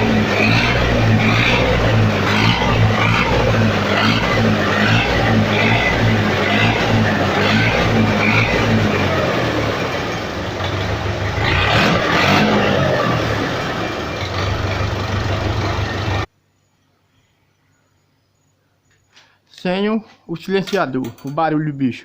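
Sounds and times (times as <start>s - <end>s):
tractor diesel engine running: 0.0s - 16.3s.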